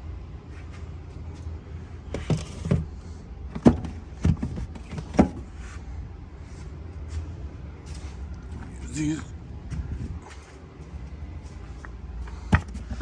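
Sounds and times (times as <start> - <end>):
car jack parts knocking: 3.5 - 5.5, 12.4 - 13.0.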